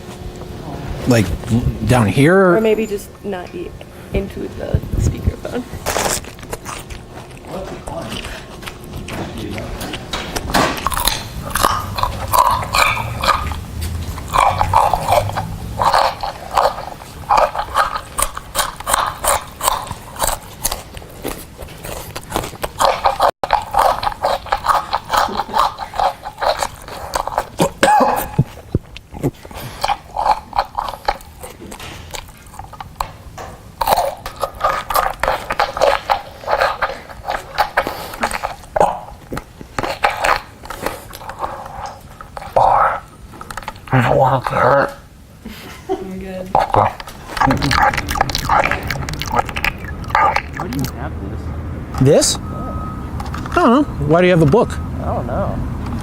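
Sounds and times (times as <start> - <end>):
tinny crunching through megaphone: 10.8 - 28.5, 46.6 - 50.9.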